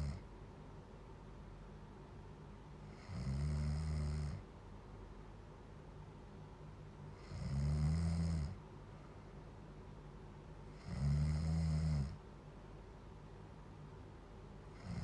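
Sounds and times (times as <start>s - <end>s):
loud snoring: 0.0s - 0.2s, 2.9s - 4.4s, 7.2s - 8.6s, 10.7s - 12.2s, 14.7s - 15.0s.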